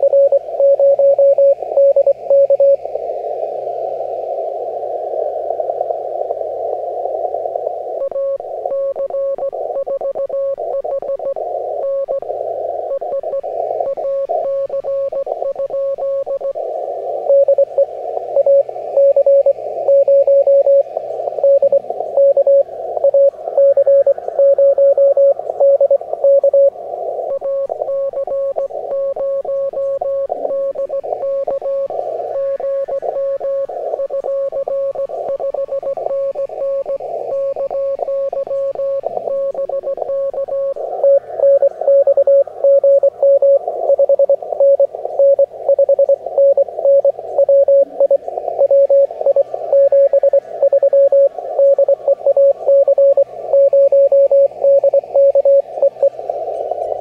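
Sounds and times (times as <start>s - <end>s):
morse code tone: 0.0s - 2.8s, 8.0s - 12.3s, 17.3s - 20.8s, 21.4s - 26.7s, 27.3s - 56.1s
radio band noise hiss: 0.0s - 57.0s.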